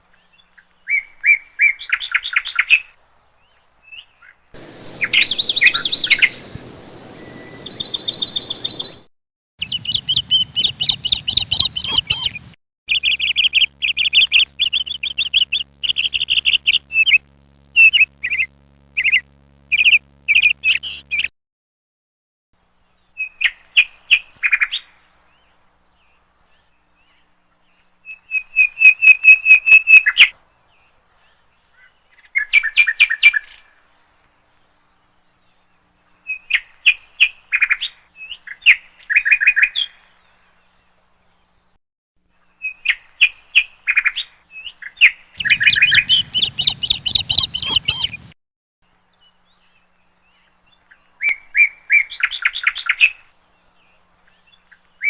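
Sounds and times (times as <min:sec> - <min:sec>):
birds chirping: 0:03.6 - 0:21.3, 0:45.4 - 0:48.4.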